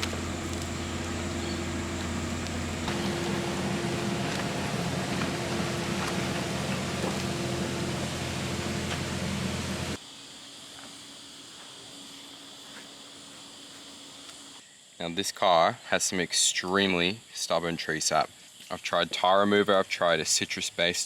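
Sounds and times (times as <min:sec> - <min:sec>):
motor hum: 0:00.0 - 0:10.0
loud hiss: 0:00.0 - 0:11.4.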